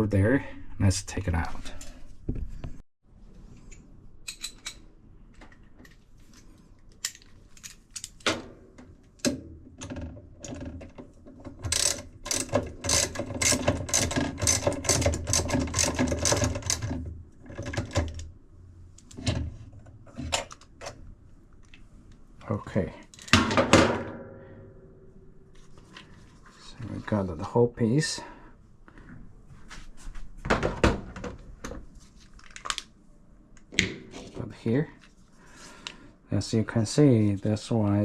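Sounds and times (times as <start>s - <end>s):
ratchet tool clicking: 11.7s - 16.8s.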